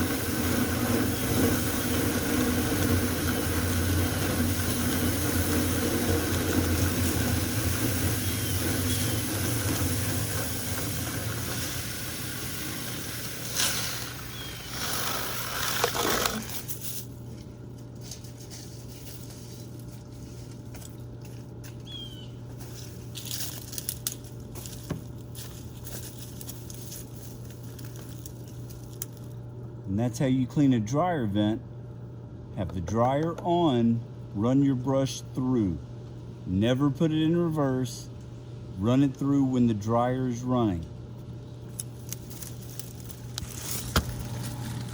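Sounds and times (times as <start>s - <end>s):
dryer vent air rushing: 0.0s - 17.4s.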